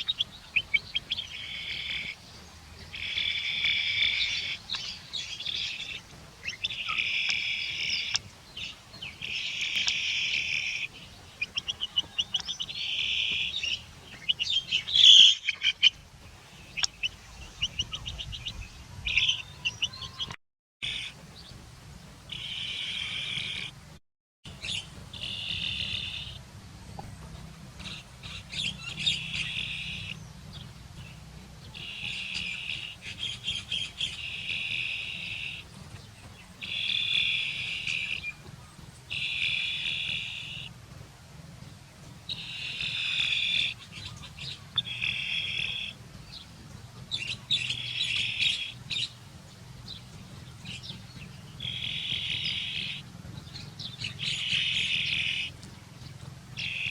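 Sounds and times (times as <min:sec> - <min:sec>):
chick peeping: 0:02.8 - 0:16.0, 0:16.6 - 0:21.2, 0:24.7 - 0:26.4, 0:42.3 - 0:46.0.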